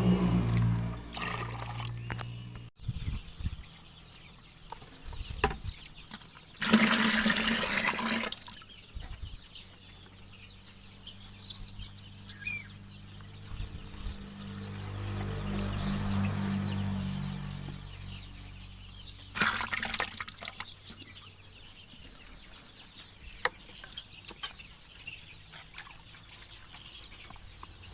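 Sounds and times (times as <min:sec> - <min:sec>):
chickens clucking: 0:20.3 - 0:27.9.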